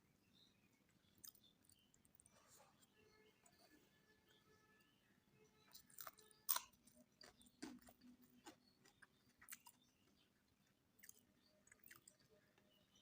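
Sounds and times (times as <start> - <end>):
wet chewing and mouth smacks: 11.0 - 12.3.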